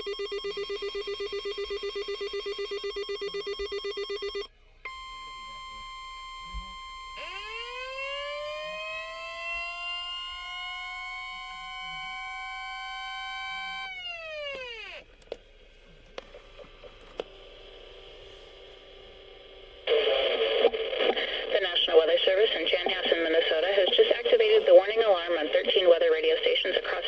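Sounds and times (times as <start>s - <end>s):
warning alarm tone: 0.0s - 15.0s
siren winding up: 0.0s - 15.1s
faint hum: 0.0s - 27.0s.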